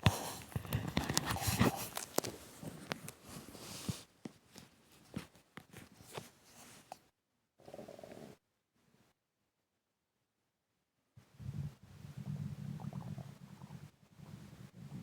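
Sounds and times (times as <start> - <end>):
breath: 0.0 - 2.0
stomach gurgling: 11.4 - 15.0.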